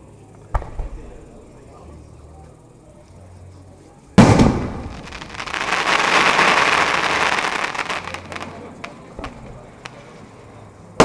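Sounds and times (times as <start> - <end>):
firework bang: 0.5 - 1.2, 4.2 - 8.6
firework crackling: 4.2 - 10.6.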